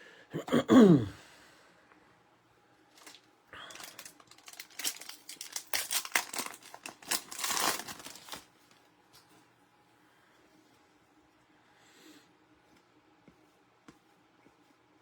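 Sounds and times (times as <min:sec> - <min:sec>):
plastic foil wrapper crinkling: 0:02.9 - 0:08.8.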